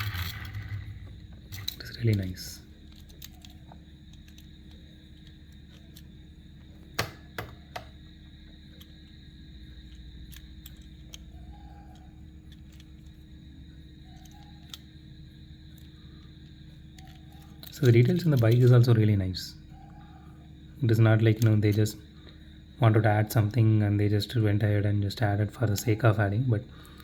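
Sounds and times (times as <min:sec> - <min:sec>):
toy car parts clicking: 0:00.0 - 0:06.1, 0:09.8 - 0:13.2, 0:14.0 - 0:14.9, 0:17.0 - 0:18.8
low room hum: 0:00.0 - 0:27.0.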